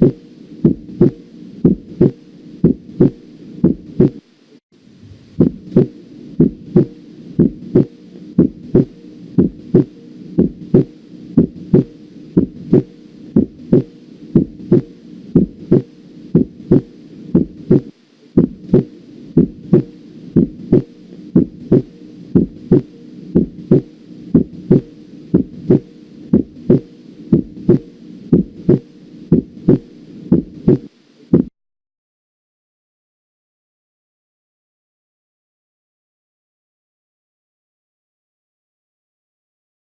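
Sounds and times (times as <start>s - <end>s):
heartbeat: 0.0s - 4.2s, 5.0s - 31.5s
low hum: 0.0s - 4.2s, 4.8s - 31.5s.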